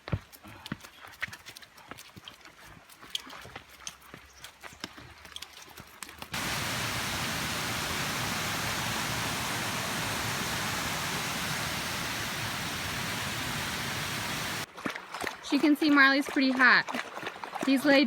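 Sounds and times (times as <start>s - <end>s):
rushing water: 6.4s - 14.7s.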